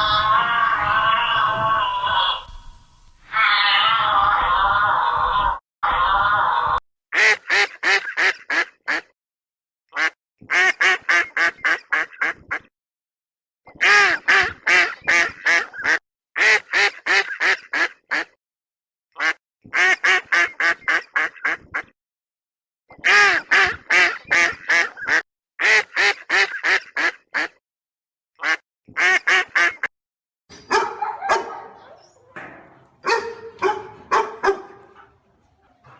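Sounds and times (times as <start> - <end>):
duck quacking: 7.2 - 9.1, 9.9 - 12.7, 13.8 - 18.4, 19.2 - 21.9, 23.0 - 27.6, 28.4 - 29.9, 30.7 - 35.9.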